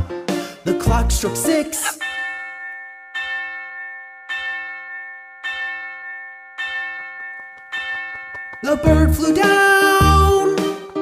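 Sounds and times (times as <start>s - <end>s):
clock bell striking: 1.8s - 11.0s.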